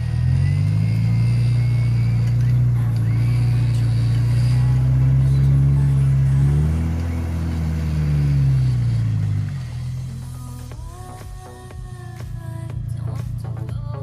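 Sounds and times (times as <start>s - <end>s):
off-road vehicle engine under load: 0.0s - 14.0s.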